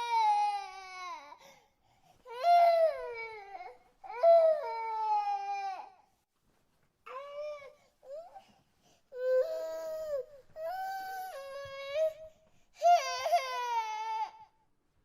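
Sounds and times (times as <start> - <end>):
baby crying: 9.1 - 14.5.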